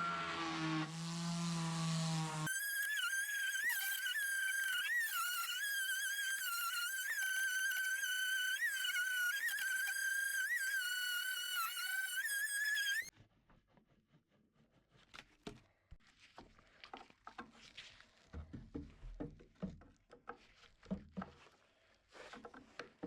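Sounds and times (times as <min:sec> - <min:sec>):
power tool motor whine: 0:00.0 - 0:13.1.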